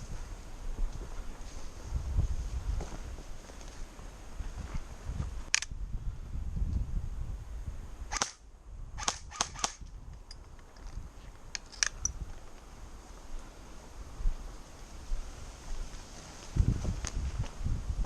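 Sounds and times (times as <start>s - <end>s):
airsoft gun shots: 8.1s - 8.4s, 9.0s - 9.8s.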